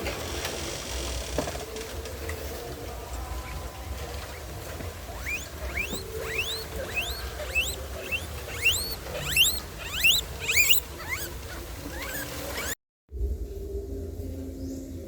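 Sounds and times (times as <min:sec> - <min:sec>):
small animals squeaking: 0:04.2 - 0:12.8
low rumble: 0:13.1 - 0:15.0.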